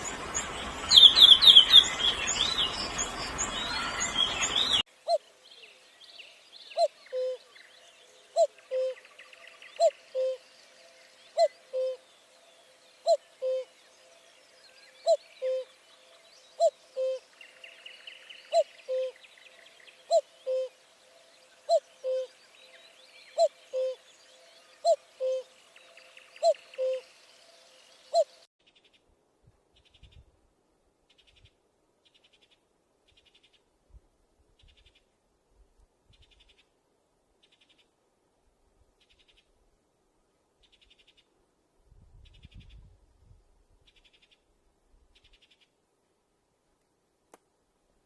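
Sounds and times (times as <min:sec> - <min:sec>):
faint bird chirping: 0:00.0 - 0:30.3, 0:36.0 - 0:36.8, 0:38.8 - 0:39.7, 0:40.6 - 0:41.4, 0:42.0 - 0:45.8.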